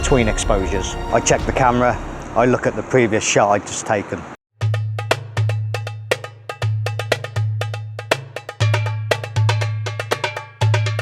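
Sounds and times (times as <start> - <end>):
sharp percussive knocks: 0.0 - 2.9
low bass note: 0.0 - 3.2.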